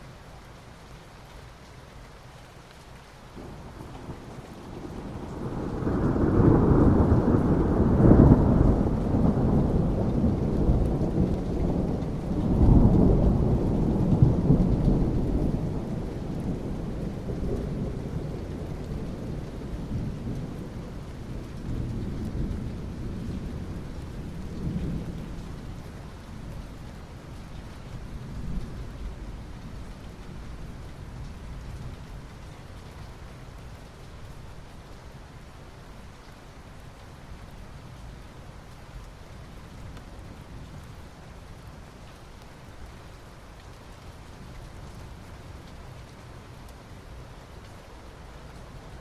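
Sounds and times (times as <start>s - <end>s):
rain falling on asphalt: 0.0s - 49.0s
rolling thunder: 3.4s - 25.8s.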